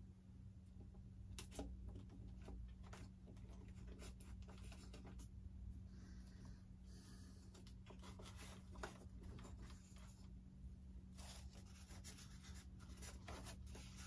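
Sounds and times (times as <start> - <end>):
steady low hum: 0.0 - 14.0
faint clicks and scratching: 0.6 - 14.0.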